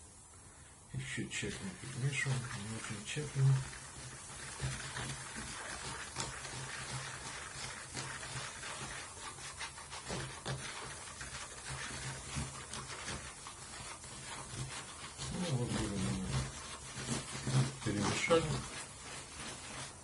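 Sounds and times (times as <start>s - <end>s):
solution fizzing: 1.0s - 20.0s.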